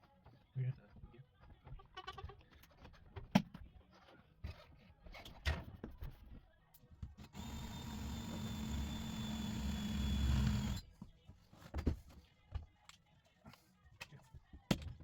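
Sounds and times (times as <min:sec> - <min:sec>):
machine hum with high whine: 0:07.3 - 0:10.8.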